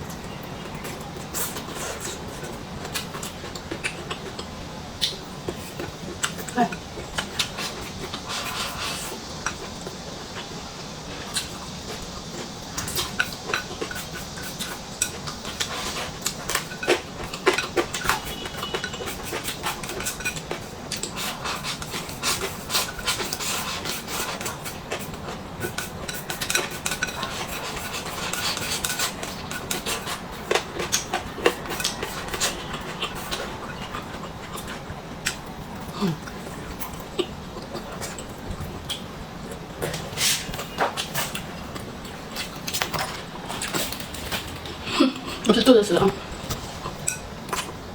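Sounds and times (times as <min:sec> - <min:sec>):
utensils clicking against bowl: 0:24.4 - 0:33.8.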